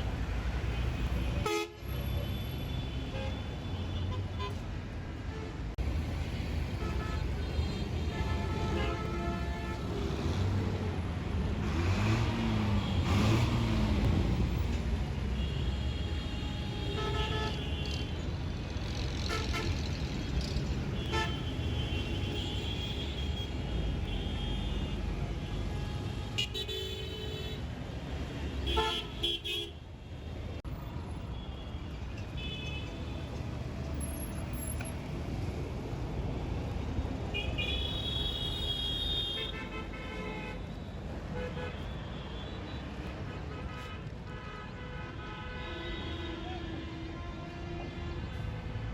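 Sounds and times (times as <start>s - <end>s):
traffic engines rumbling: 0.0s - 48.9s
vehicle horns honking: 0.8s - 4.6s, 15.3s - 18.2s, 21.0s - 27.6s, 28.6s - 29.8s, 37.3s - 48.6s.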